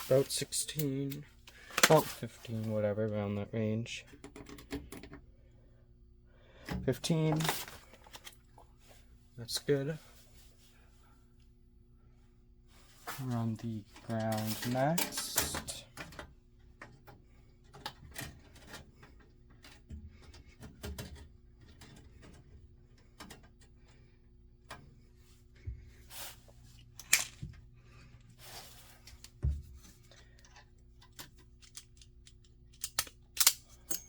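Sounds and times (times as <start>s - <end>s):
hands working on wiring: 0.0s - 3.3s, 4.0s - 5.3s, 13.2s - 34.0s.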